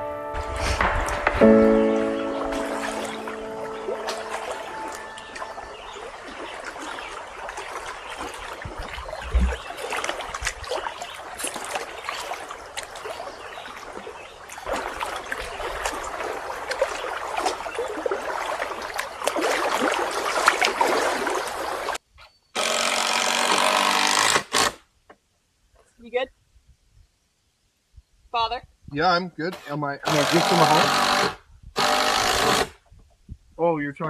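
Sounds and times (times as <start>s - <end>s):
low thump: 0.0s - 2.5s
lake water lapping: 0.0s - 22.0s, 30.1s - 32.6s.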